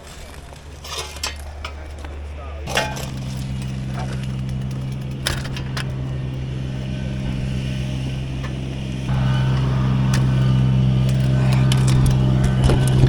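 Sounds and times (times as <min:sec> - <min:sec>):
skid steer diesel engine: 0:00.0 - 0:13.0
debris knocks: 0:02.7 - 0:07.5.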